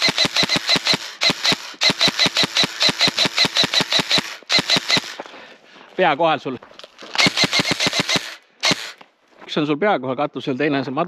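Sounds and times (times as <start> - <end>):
airsoft gun firing full auto: 0.0 - 5.2, 7.2 - 9.0.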